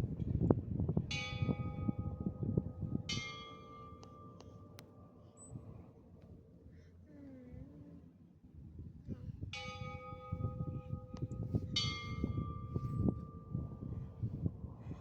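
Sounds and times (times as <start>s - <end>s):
church bell ringing: 1.1s - 4.4s, 9.6s - 13.7s.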